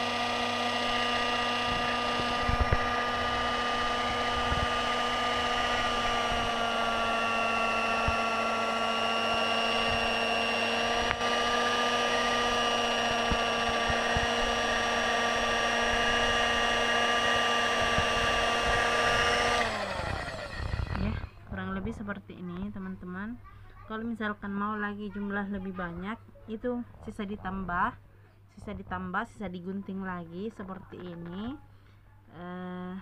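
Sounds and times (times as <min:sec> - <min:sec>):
fabric cutting machine whining: 0:00.0 - 0:21.3.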